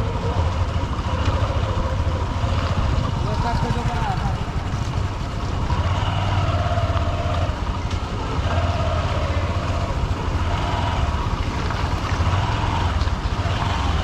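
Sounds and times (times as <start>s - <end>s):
motorcycle engine running: 0.0s - 14.0s
road traffic noise: 0.0s - 14.0s.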